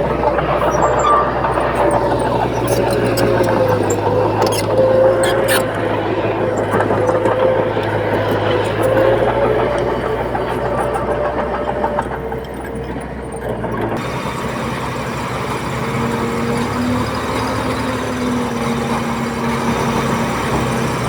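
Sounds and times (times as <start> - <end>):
earthmoving machinery diesel engines: 0.0 - 21.0.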